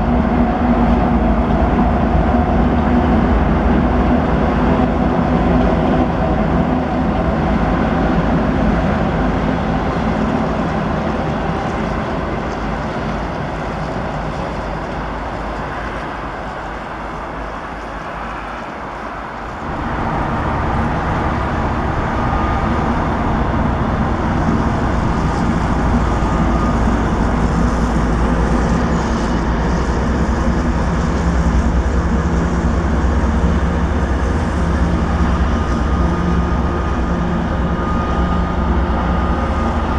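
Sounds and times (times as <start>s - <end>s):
diesel locomotive engine drone: 0.0s - 39.9s.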